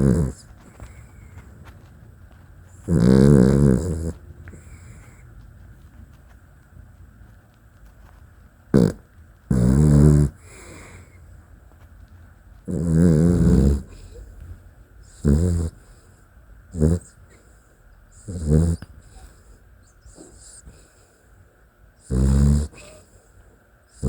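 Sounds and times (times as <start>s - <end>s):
dog snoring: 0.0s - 1.8s, 2.6s - 5.2s, 8.7s - 11.2s, 12.6s - 16.1s, 16.7s - 17.5s, 18.1s - 21.1s, 22.0s - 23.1s.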